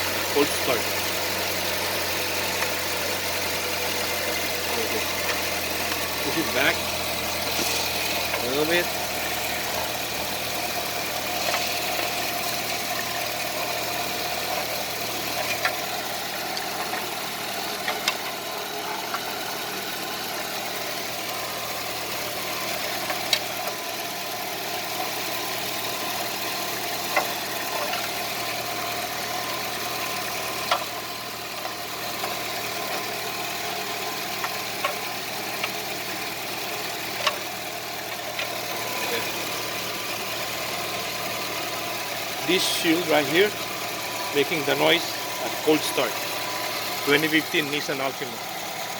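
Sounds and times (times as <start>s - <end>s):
car engine idling: 0.0s - 48.9s.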